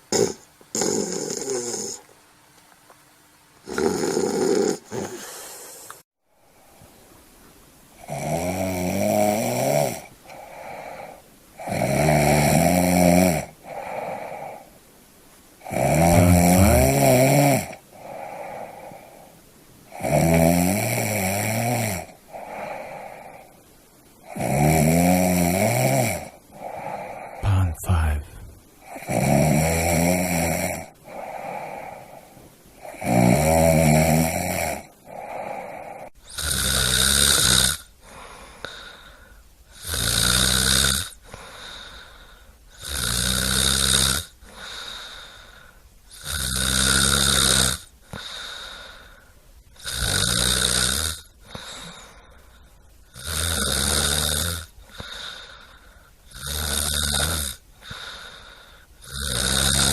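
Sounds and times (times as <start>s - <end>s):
person snoring: 0.1s - 2.0s, 3.6s - 6.0s, 8.0s - 14.7s, 15.6s - 19.3s, 19.9s - 23.5s, 24.2s - 49.2s, 49.8s - 52.3s, 53.1s - 59.9s
quiet breathing: 4.8s - 8.1s, 9.9s - 11.7s, 13.4s - 24.4s, 25.6s - 33.0s, 33.9s - 36.4s, 37.8s - 40.0s, 41.1s - 43.0s, 43.7s - 46.3s, 47.9s - 53.2s, 54.6s - 59.5s.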